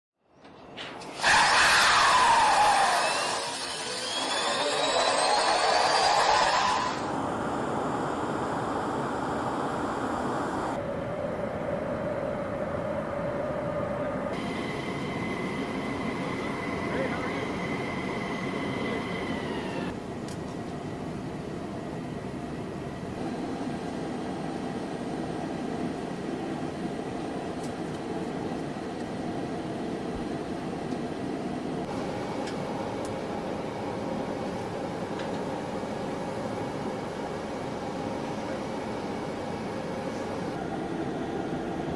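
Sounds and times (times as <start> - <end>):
high engine whine: 0.4 - 41.9
jet engine spooling up: 1.0 - 20.0.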